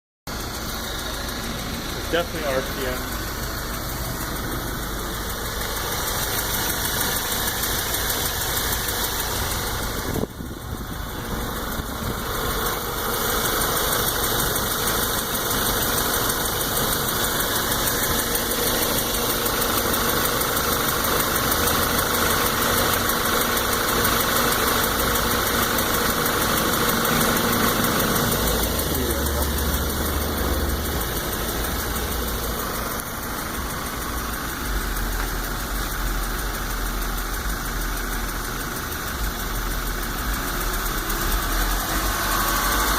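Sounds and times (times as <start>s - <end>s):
car engine running: 0.3s - 42.9s
fast ticking from engine: 0.3s - 42.9s.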